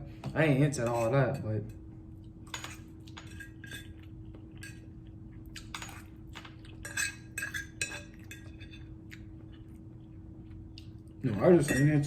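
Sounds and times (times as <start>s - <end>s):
faint steady hum: 0.0s - 12.0s
cutlery clinking on a dish: 6.8s - 8.9s, 11.3s - 12.0s.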